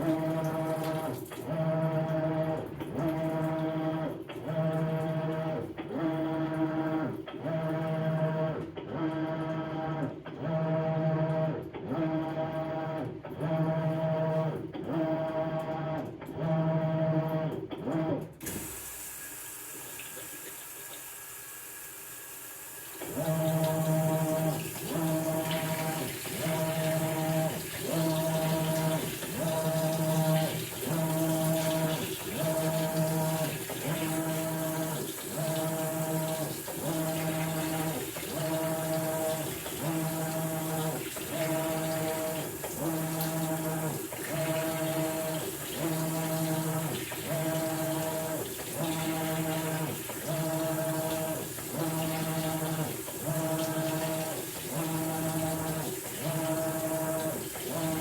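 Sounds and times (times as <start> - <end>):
water pouring into tub: 0.0 - 1.6, 18.4 - 58.0
washing machine motor agitating: 0.0 - 9.9, 18.4 - 58.0.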